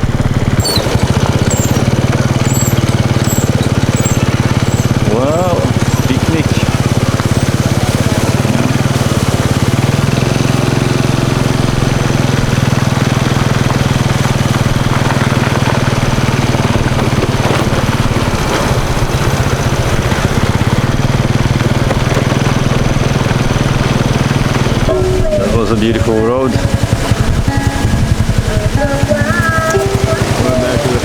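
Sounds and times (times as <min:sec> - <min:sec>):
vehicle engine running: 0:00.0 - 0:31.0.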